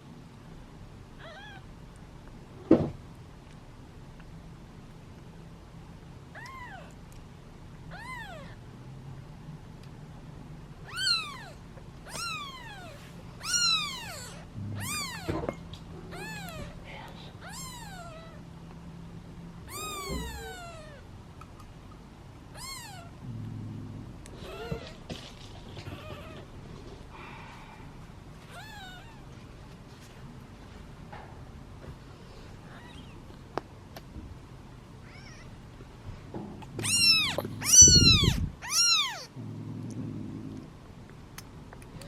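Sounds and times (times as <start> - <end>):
kittens meowing: 1.2 - 1.7, 6.3 - 7.0, 7.9 - 8.6, 10.8 - 16.8, 17.4 - 18.4, 19.6 - 21.1, 22.5 - 23.2, 24.3 - 25.1, 25.7 - 26.5, 28.5 - 29.3, 32.6 - 33.3, 35.0 - 35.6, 36.6 - 39.4.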